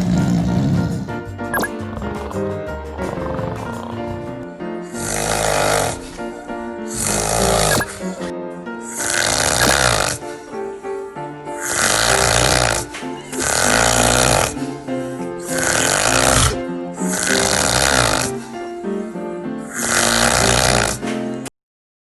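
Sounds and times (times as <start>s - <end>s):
background music: 0.0s - 21.5s
person snoring: 1.6s - 6.0s, 9.4s - 10.2s, 19.8s - 21.0s.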